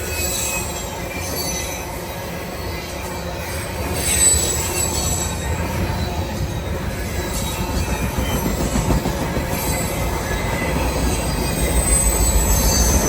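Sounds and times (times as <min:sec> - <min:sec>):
freight train rumbling past: 0:00.0 - 0:13.0
high-pitched wheel squeal: 0:03.5 - 0:05.5, 0:09.6 - 0:13.0.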